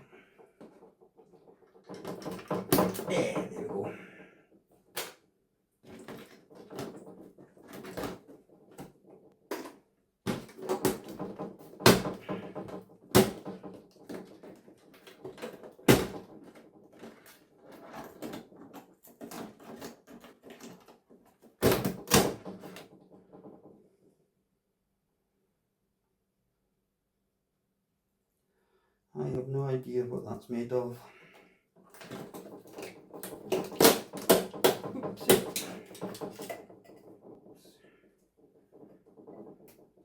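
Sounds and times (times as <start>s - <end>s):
tools and parts clattering: 0.0s - 5.2s, 5.8s - 23.8s, 31.3s - 40.0s.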